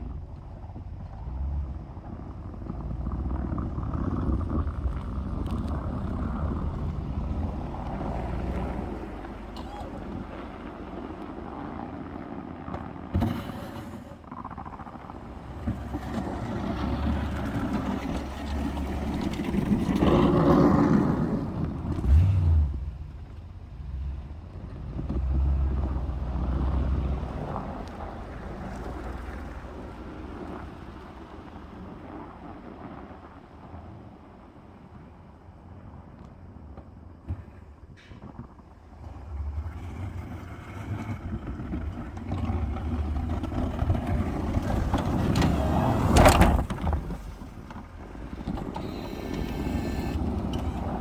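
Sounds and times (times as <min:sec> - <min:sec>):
pickup engine under load: 0:00.0 - 0:33.0, 0:37.2 - 0:51.0
thump: 0:13.1 - 0:14.1.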